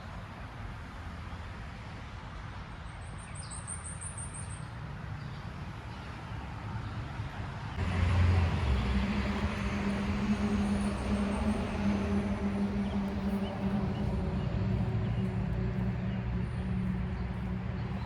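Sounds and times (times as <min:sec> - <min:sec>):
engine humming: 0:07.8 - 0:18.0
low outdoor rumble: 0:07.8 - 0:18.0.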